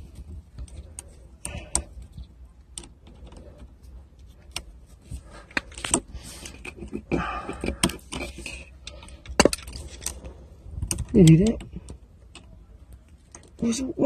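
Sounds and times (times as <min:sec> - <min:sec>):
plastic clips and screws clicking: 0:05.4 - 0:13.7.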